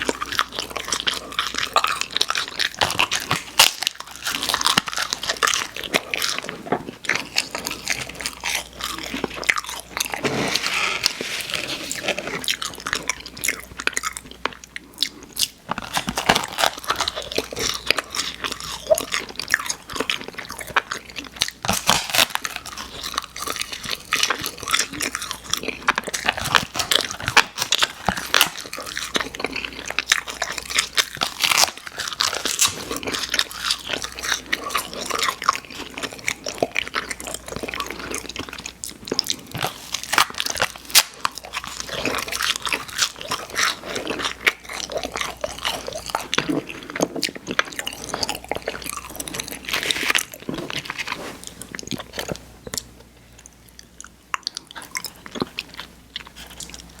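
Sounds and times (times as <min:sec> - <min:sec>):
chewing hard candy: 0:00.0 - 0:57.0.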